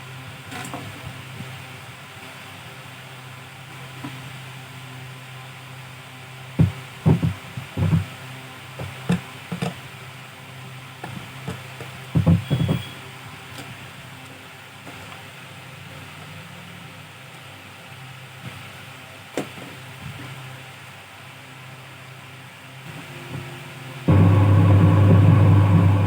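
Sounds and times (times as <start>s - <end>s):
steady low hum: 21.4s - 26.0s.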